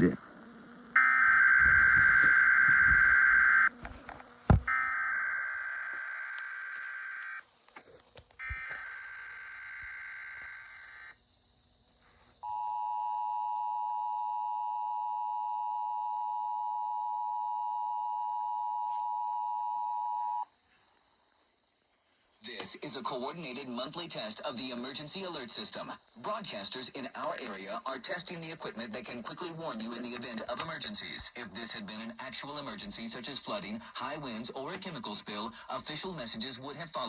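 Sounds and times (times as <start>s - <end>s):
screechy digital data bursts: 1.0s - 3.7s, 4.7s - 7.4s, 8.4s - 11.2s
two-tone attention signal: 1.0s - 3.7s.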